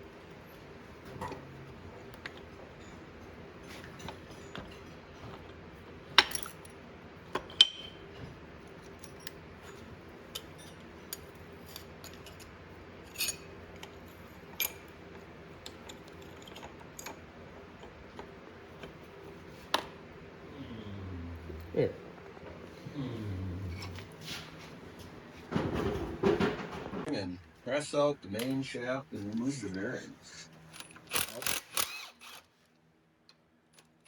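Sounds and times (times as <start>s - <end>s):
faint steady hum: 0.0s - 34.0s
metal tools clinking: 8.8s - 15.0s, 15.6s - 17.2s, 30.3s - 32.0s.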